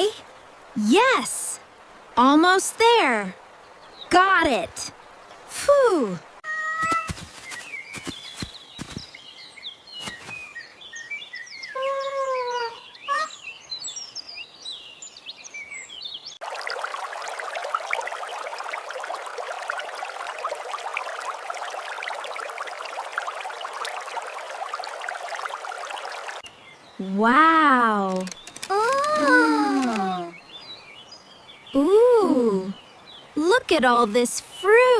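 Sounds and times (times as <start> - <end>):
birds chirping: 6.6 - 34.7
sharp clicks: 28.1 - 30.2
crackling hiss: 28.1 - 30.4.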